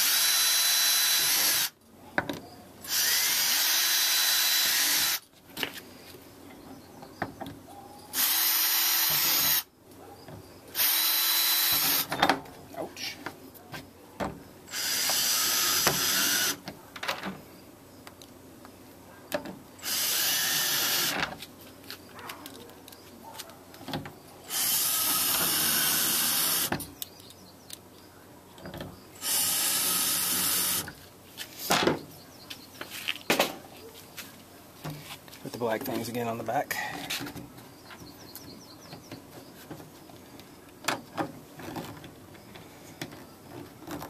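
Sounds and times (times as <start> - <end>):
power drill drilling plastic: 0.0 - 1.7, 2.9 - 5.2, 14.7 - 16.6, 24.5 - 26.8, 29.2 - 30.9.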